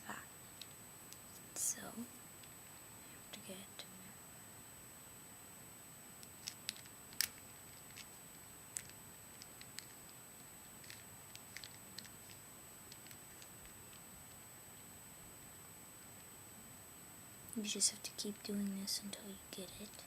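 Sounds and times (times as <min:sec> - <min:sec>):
puzzle cube plastic clicks: 0:06.2 - 0:10.2, 0:10.8 - 0:14.0.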